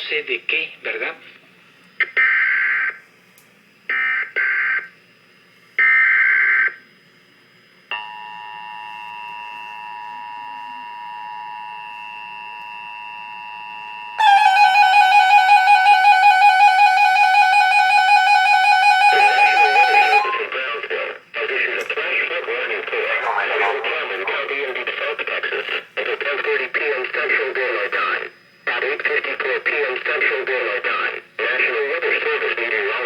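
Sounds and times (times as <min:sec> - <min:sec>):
multi-tone attention signal: 0:14.2 - 0:20.7
fast-pulsing alert tone: 0:17.7 - 0:20.5, 0:23.1 - 0:24.8.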